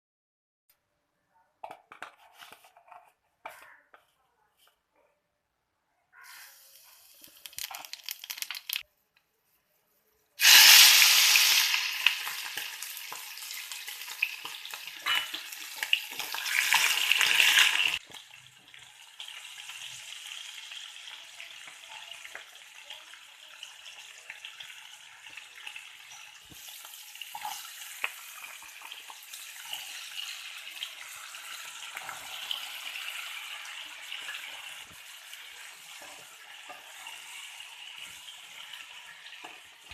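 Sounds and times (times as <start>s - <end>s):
food sizzling in hot oil: 6.2s - 8.8s, 10.4s - 39.9s
small crackles: 6.8s - 9.3s.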